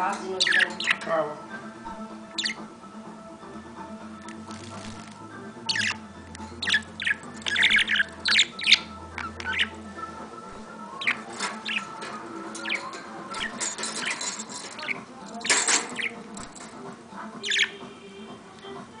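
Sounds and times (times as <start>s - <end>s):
pet bird squawking and chirping: 0.4s - 1.1s, 2.3s - 2.7s, 5.6s - 10.0s, 10.6s - 16.5s, 17.4s - 17.8s.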